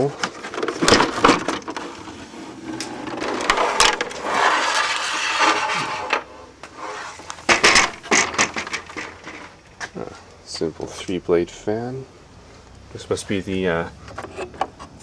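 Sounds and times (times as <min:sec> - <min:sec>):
plastic scraping and clicking: 0:00.2 - 0:06.2, 0:14.0 - 0:15.0.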